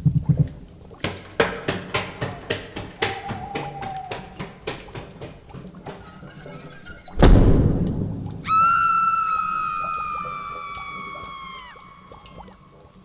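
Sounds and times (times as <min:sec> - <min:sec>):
small knocks: 0:00.5 - 0:08.5
heavy ringing boom: 0:07.2 - 0:08.9.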